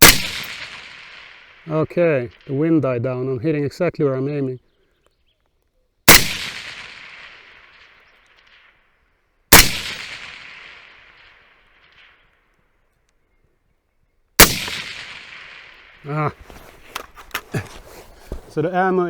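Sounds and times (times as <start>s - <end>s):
long gunshot echo: 0.0s - 1.6s, 6.1s - 8.6s, 9.5s - 12.1s, 14.4s - 16.0s
suppressed rifle shots: 0.0s - 1.6s, 6.1s - 8.8s, 9.5s - 12.3s, 14.4s - 16.0s.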